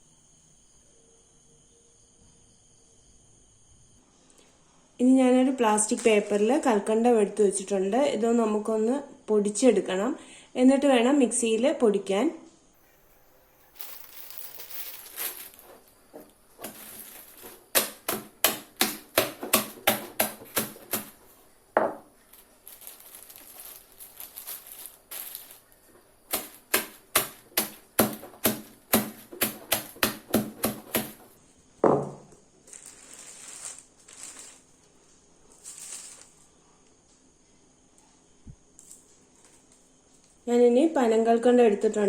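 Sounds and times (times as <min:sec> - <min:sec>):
pounding sugar crystals: 0:12.8 - 0:31.4, 0:32.6 - 0:36.5
plastic crinkling: 0:12.9 - 0:21.5, 0:22.1 - 0:31.3, 0:32.7 - 0:36.5.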